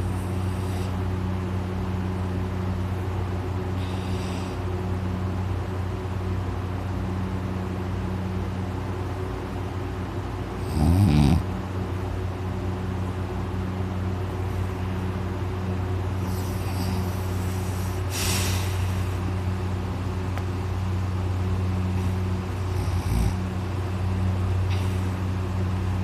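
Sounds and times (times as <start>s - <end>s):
rattling snort: 0.0s - 1.0s, 3.8s - 4.6s, 10.6s - 11.5s, 16.2s - 19.1s, 21.9s - 23.5s
long noisy breath: 0.0s - 1.1s, 3.7s - 4.8s, 16.1s - 19.4s, 24.7s - 25.3s
person snoring loudly: 10.6s - 11.5s, 22.7s - 23.4s.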